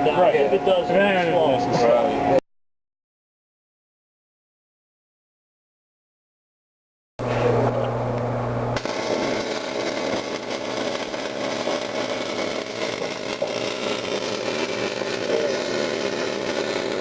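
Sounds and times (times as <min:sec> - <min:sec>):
low electrical hum: 0:07.2 - 0:17.0
welder arc crackling: 0:08.7 - 0:17.0.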